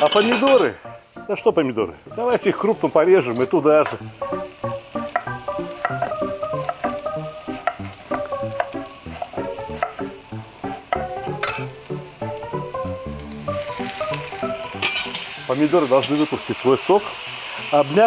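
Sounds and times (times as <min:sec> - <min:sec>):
instrumental tune: 0:00.0 - 0:16.1
vegetables sizzling in hot oil: 0:00.0 - 0:18.0.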